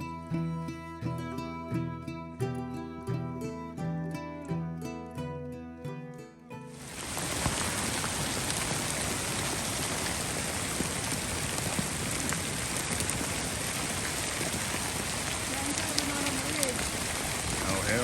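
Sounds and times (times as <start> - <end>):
music: 0.0 - 6.9
hail and rain falling: 6.8 - 18.0.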